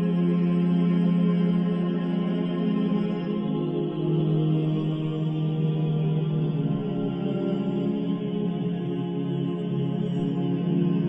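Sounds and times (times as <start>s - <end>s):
slow ambient drone music: 0.0s - 11.0s.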